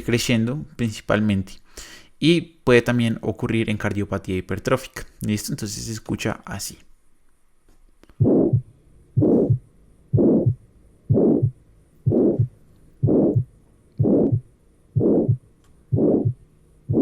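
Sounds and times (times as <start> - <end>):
heartbeat with murmur: 8.2 - 17.0.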